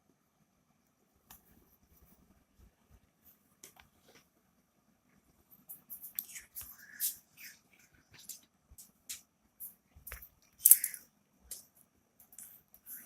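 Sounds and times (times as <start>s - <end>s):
small objects clicking and rustling: 8.2s - 13.0s.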